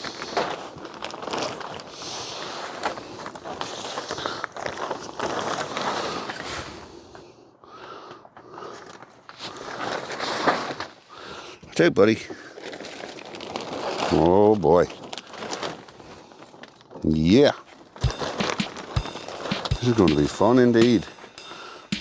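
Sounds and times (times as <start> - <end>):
plastic sheet rustling: 12.6 - 16.7.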